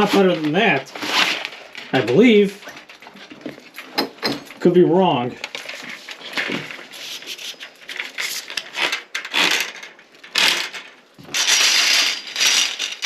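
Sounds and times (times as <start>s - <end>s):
rubbing and scraping: 0.0s - 4.7s, 5.4s - 13.0s
clicks and clatters: 7.4s - 13.0s.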